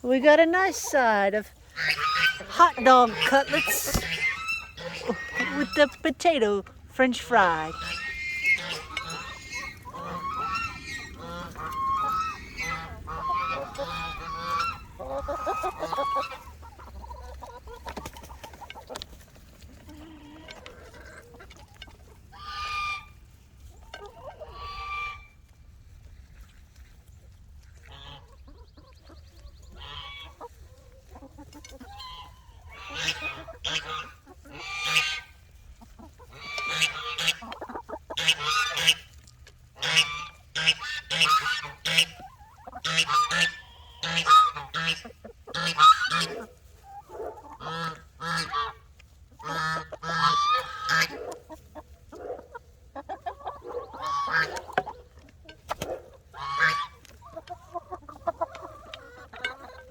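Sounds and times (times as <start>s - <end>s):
poultry honking squawks: 1.0s - 5.9s, 7.4s - 16.5s, 29.8s - 30.3s, 31.9s - 35.3s, 36.3s - 39.0s, 39.8s - 46.4s, 47.6s - 48.8s, 49.4s - 51.2s, 56.4s - 57.0s.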